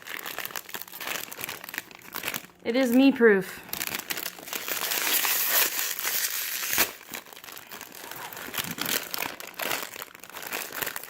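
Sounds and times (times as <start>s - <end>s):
plastic bag crinkling: 0.0s - 11.0s
sharp plastic crackle: 0.0s - 11.0s.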